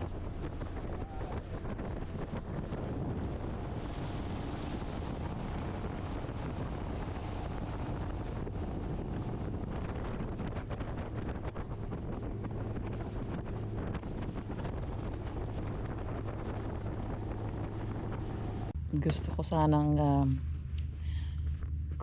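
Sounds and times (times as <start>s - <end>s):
boat motor running: 0.0s - 22.0s
wind buffeting microphone: 0.0s - 22.0s.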